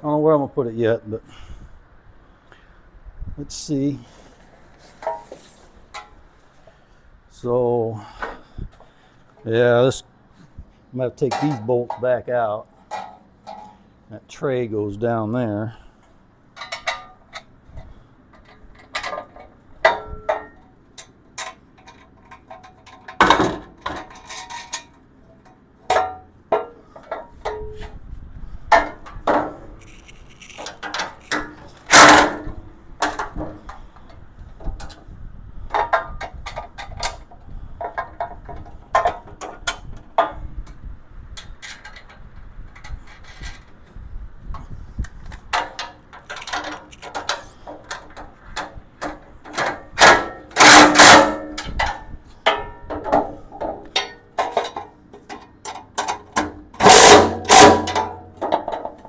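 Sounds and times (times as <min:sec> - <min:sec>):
metal parts clinking and clanking: 0:11.2 - 0:13.8, 0:16.6 - 0:17.5, 0:18.3 - 0:28.0, 0:28.7 - 0:35.0, 0:35.7 - 0:40.4, 0:41.4 - 0:43.8, 0:44.6 - 0:59.0.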